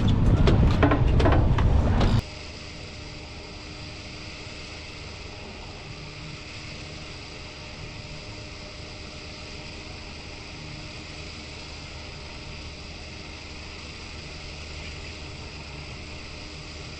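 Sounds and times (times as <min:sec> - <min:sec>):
boat rumbling under way: 0:00.0 - 0:02.2.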